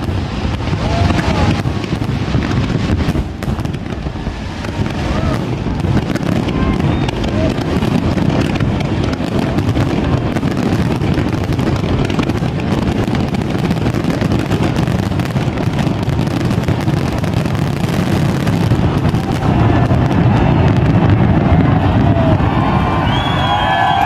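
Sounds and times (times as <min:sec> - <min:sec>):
crowd voices: 0:00.0 - 0:24.0
fireworks bursting: 0:00.0 - 0:24.0
wind buffeting microphone: 0:00.0 - 0:24.0.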